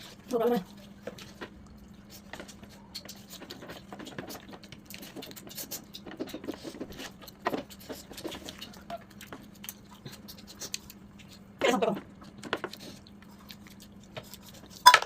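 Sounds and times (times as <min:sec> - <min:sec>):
faint steady hum: 0:00.0 - 0:15.0
chewing smacks and clicks: 0:00.7 - 0:15.0.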